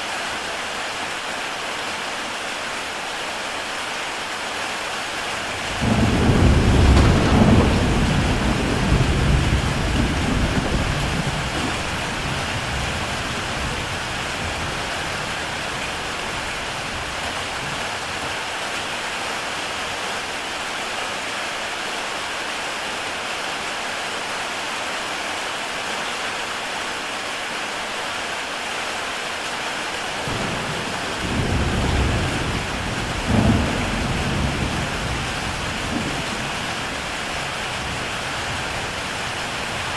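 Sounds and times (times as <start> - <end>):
heavy rain on a tile roof: 0.0 - 39.9
thunder rumbling: 5.6 - 18.3, 30.2 - 39.9.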